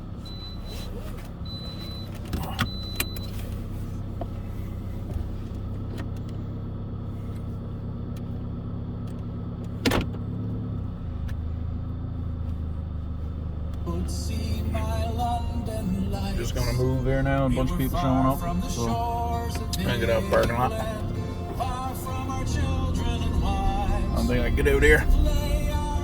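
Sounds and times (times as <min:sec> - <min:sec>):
car engine idling: 0:00.0 - 0:26.0
music: 0:17.9 - 0:26.0.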